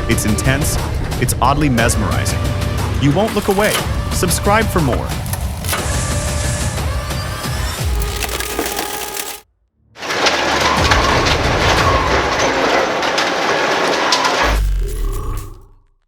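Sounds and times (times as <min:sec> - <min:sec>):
shredding machine grinding: 0:03.3 - 0:09.4.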